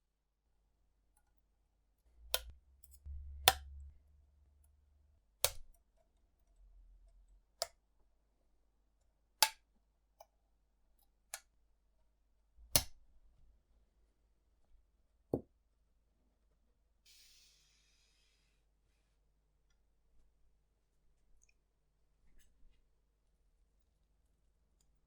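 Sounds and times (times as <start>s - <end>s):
faint low rumble: 2.1s - 5.4s.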